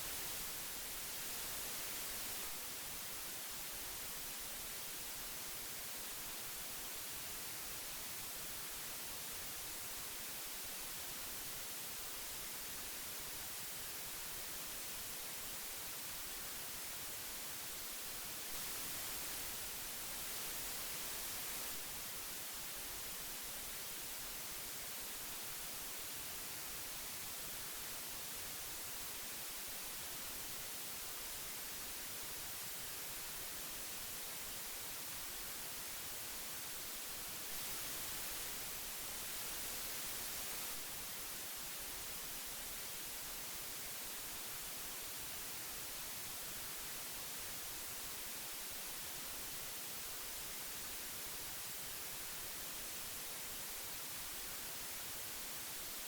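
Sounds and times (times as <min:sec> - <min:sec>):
magnetic tape hiss: 0:00.0 - 0:56.0.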